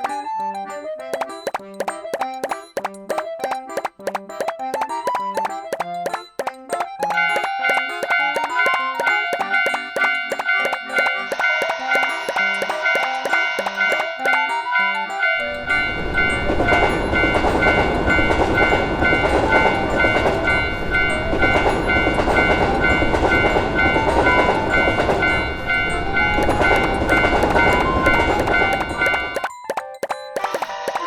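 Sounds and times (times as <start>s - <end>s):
crossing warning bell ringing: 7.0s - 29.5s
train rumbling past: 7.6s - 29.4s.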